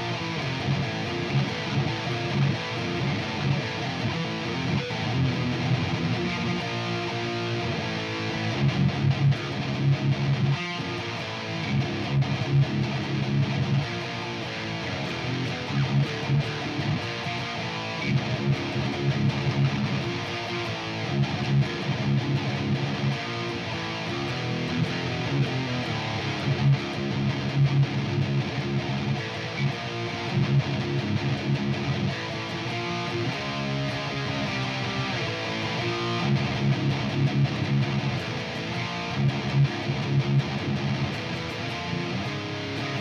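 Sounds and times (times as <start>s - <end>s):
electric guitar playing: 0.0s - 43.0s.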